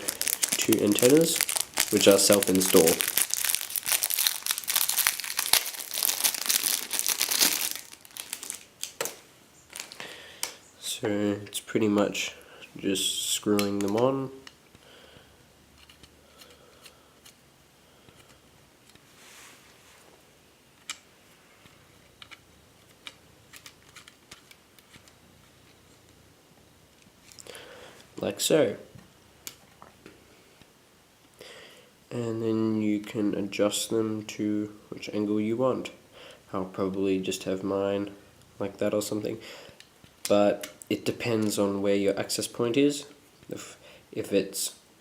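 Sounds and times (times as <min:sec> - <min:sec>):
packaging crinkling: 0:00.0 - 0:10.6
soft rustle: 0:18.8 - 0:25.8.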